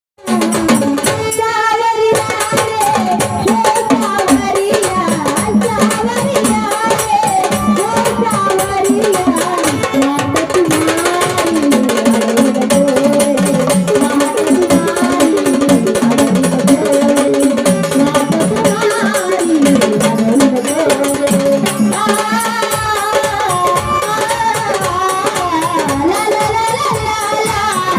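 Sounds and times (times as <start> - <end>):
drum and hand percussion: 0.2 - 27.9
person singing: 0.3 - 27.9.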